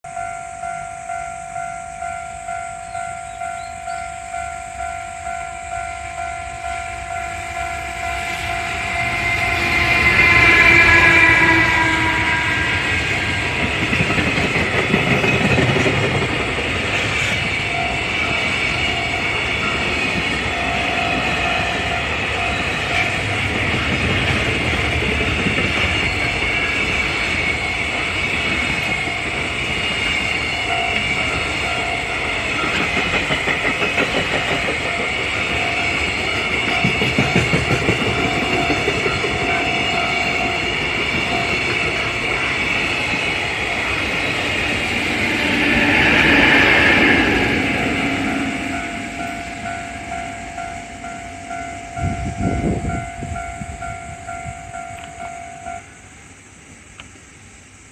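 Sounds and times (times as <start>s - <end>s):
level-crossing alarm ringing: 0.0s - 56.2s
freight train rumbling: 0.0s - 57.8s
wheels clacking over rail joints: 7.9s - 53.1s.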